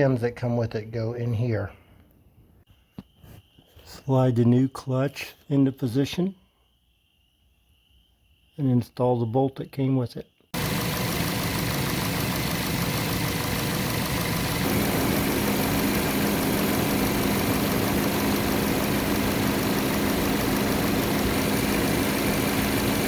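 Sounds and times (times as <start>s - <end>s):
car engine idling: 10.6s - 23.0s
steady low hum: 10.6s - 23.0s.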